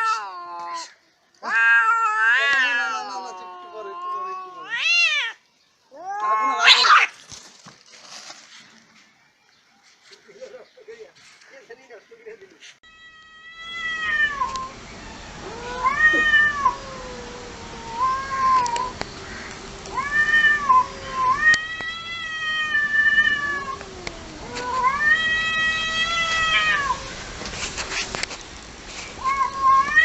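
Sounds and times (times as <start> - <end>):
cat growling: 0.0 - 7.1, 13.4 - 27.3
cats yowling: 0.0 - 7.2, 12.9 - 27.5, 29.2 - 30.0.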